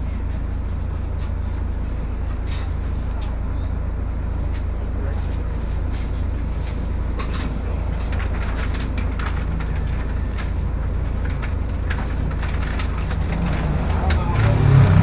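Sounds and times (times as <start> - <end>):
bus engine and road rumble: 0.0 - 15.0
bodywork rattles and clicks: 6.0 - 15.0.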